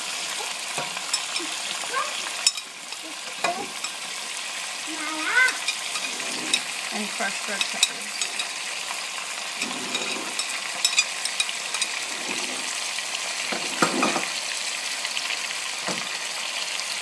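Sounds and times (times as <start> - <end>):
chicken sizzling in hot oil: 0.0 - 17.0.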